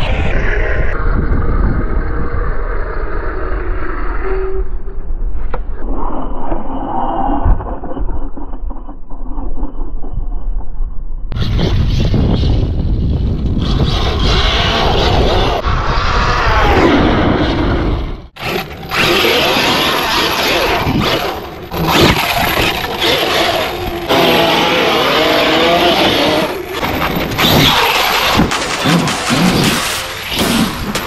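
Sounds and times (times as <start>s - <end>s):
rushing noise: 0.0s - 4.2s.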